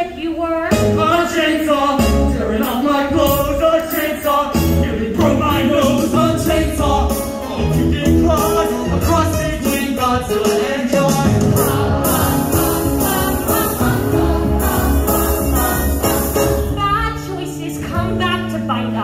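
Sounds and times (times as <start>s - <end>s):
band with pulsing beat: 1.8s - 16.9s.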